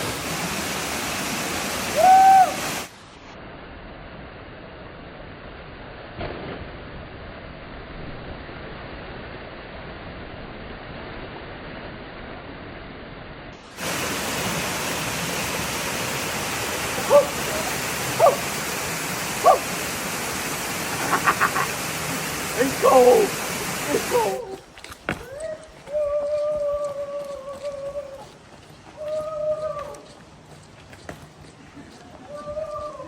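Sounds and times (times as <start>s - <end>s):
waterfall rushing: 0.0s - 3.0s, 13.6s - 33.0s
short sharp calls: 16.9s - 18.7s.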